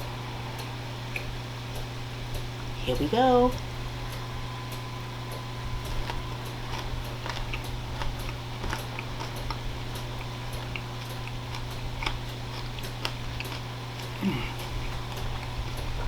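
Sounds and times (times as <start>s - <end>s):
low electrical hum: 0.0s - 16.0s
person chewing food: 5.8s - 16.0s.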